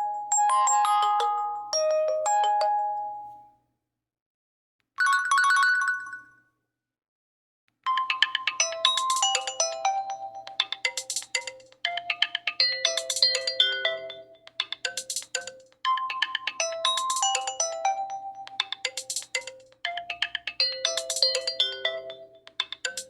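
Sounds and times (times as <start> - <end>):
phone ringtone melody: 0.0 - 3.3, 7.9 - 23.0.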